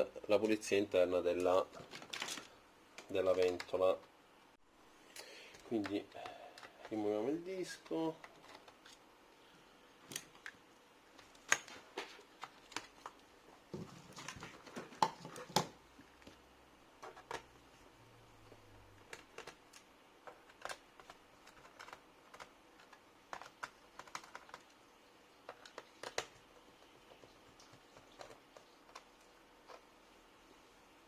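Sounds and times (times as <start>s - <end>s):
laptop parts clicking and snapping: 10.1s - 10.6s, 11.2s - 13.2s, 19.0s - 24.8s, 25.4s - 26.5s.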